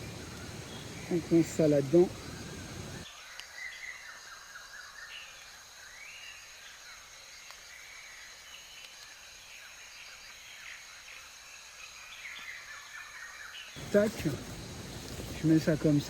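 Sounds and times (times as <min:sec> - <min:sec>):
birds chirping: 0:00.0 - 0:03.1, 0:13.8 - 0:16.0
insects humming: 0:00.0 - 0:03.1, 0:13.8 - 0:16.0.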